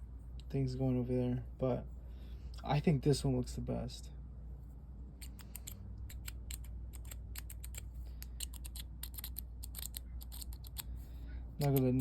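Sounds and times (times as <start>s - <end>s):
pen clicking: 5.2s - 10.9s.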